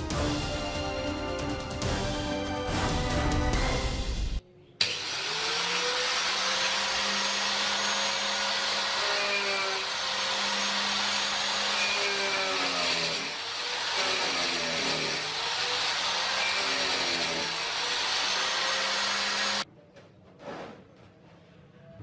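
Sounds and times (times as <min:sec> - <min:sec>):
electric angle grinder running: 0:04.8 - 0:19.6.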